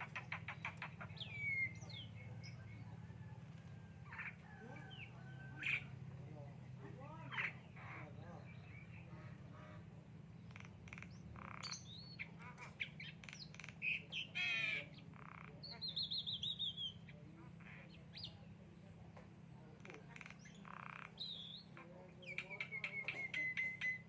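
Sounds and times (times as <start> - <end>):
bird squawking and whistling: 0.0 - 2.2, 20.2 - 24.0
steady low hum: 0.0 - 24.0.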